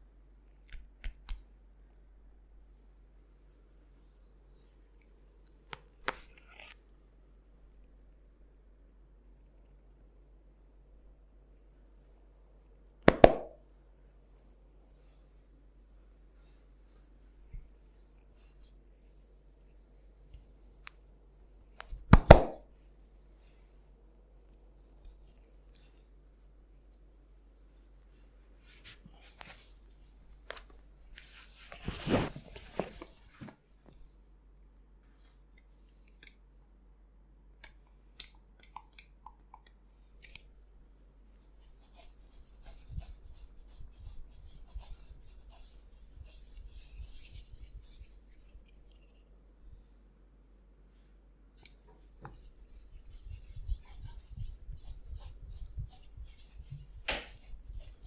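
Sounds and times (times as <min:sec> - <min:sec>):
hands rubbing skin and hair: 0:13.1 - 0:13.6, 0:14.2 - 0:19.6, 0:24.9 - 0:33.6, 0:41.3 - 0:49.3, 0:51.6 - 0:58.0
sharp smack on skin: 0:13.1 - 0:13.6, 0:22.1 - 0:22.6.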